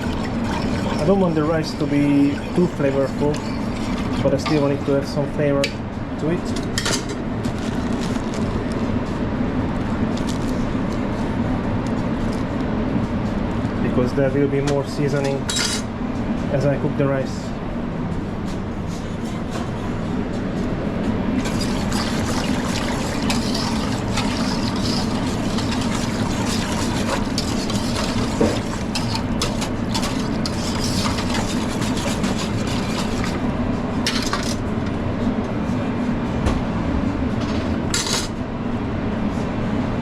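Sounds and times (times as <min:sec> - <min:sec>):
liquid poured and stirred in pot: 0:00.0 - 0:04.8, 0:21.4 - 0:33.4
kitchen hum: 0:00.0 - 0:08.8, 0:20.8 - 0:35.0.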